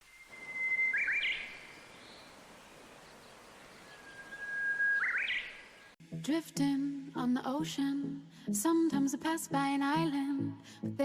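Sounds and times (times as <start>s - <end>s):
steady background hiss: 0.0s - 6.0s
bird whistle call: 0.1s - 2.0s, 3.8s - 5.9s.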